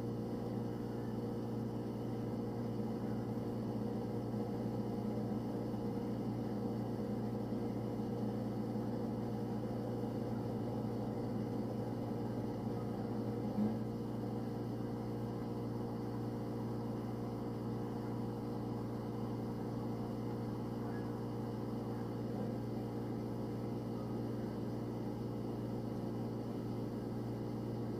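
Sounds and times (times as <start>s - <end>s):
refrigerator humming: 0.0s - 27.9s.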